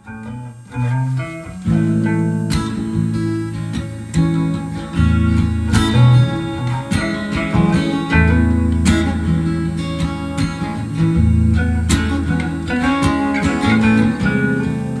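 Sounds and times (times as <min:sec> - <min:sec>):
acoustic guitar music: 0:00.0 - 0:15.0.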